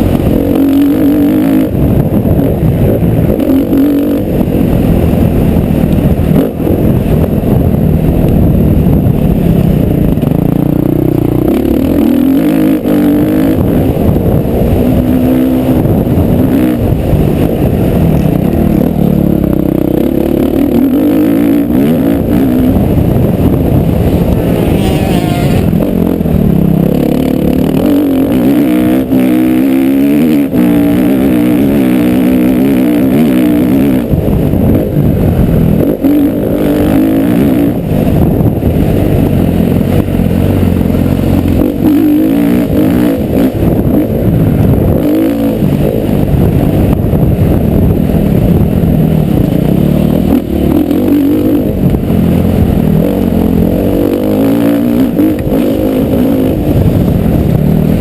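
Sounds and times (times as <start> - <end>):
motocross bike engine revving: 0.0 - 58.0.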